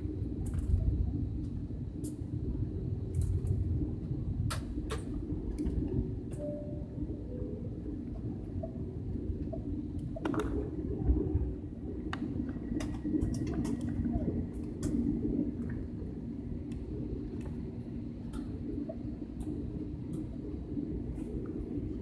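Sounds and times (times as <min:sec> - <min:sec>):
airliner engines rumbling: 0:00.0 - 0:22.0.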